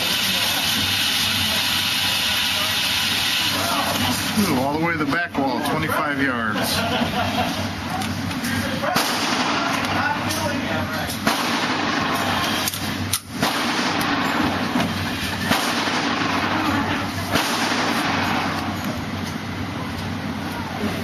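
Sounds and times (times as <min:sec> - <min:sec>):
steady noisy background: 0:00.0 - 0:21.0
gunshots: 0:08.8 - 0:10.2, 0:11.2 - 0:12.7, 0:13.3 - 0:14.8, 0:15.4 - 0:18.8.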